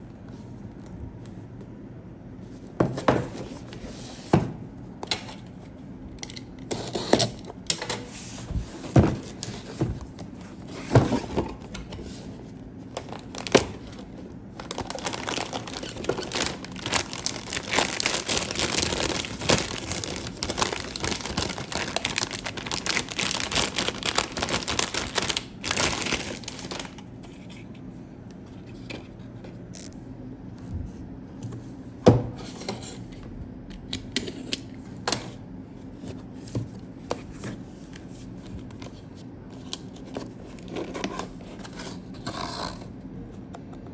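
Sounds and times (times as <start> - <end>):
packaging knocks and rustles: 8.4 - 12.3, 12.9 - 27.0
packaging crinkling: 12.9 - 27.1.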